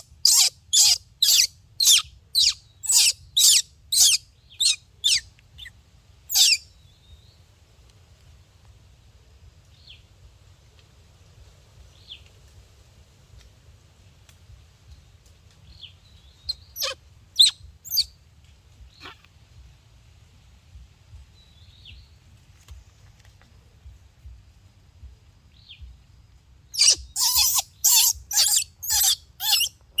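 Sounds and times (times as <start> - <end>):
high chirping calls: 0.0 - 5.2, 6.3 - 6.6, 16.4 - 18.1, 26.8 - 30.0.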